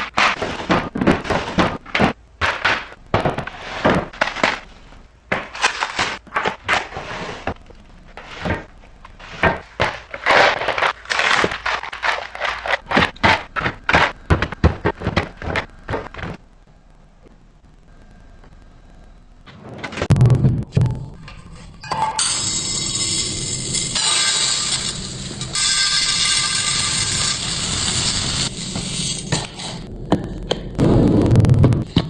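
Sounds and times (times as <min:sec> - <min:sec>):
packaging rustling and scraping: 0:00.0 - 0:16.4.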